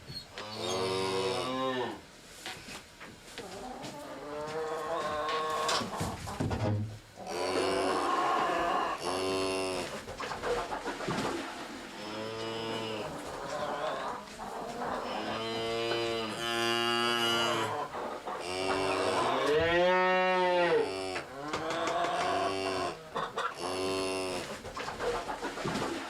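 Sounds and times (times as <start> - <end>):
cow mooing: 0.4 - 2.0, 7.3 - 9.9, 12.0 - 13.1, 15.0 - 17.7, 18.4 - 23.0, 23.6 - 24.5.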